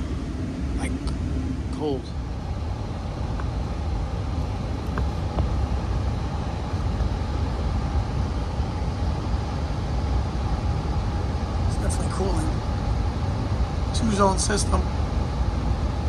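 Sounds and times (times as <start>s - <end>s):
heat pump running: 0.0s - 16.0s.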